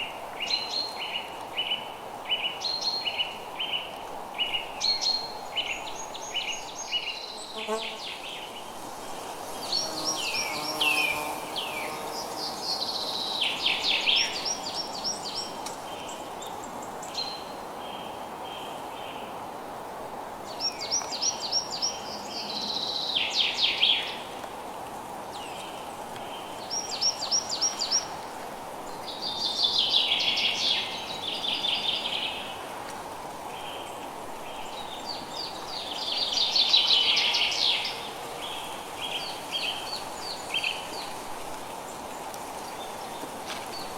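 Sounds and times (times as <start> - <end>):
songbirds chirping: 0.0 - 19.4, 20.4 - 43.9
rain hissing: 8.0 - 15.6.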